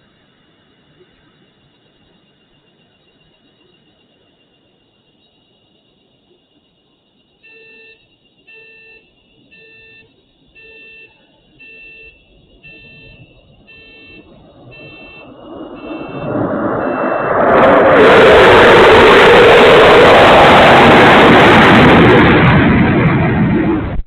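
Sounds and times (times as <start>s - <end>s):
car alarm beeping: 0.8s - 17.4s
distorted roar: 8.6s - 24.0s.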